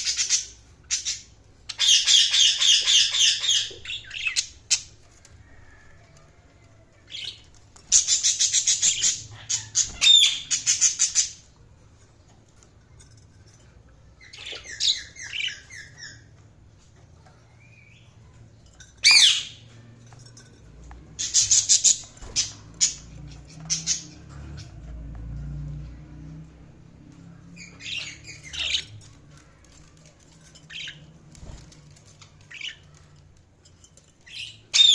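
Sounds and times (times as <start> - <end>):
budgerigars chirping and squawking: 0.0 - 4.9, 7.1 - 11.6, 14.2 - 16.4, 19.0 - 19.6, 21.2 - 24.8, 27.5 - 29.2, 30.7 - 31.7, 34.3 - 34.9.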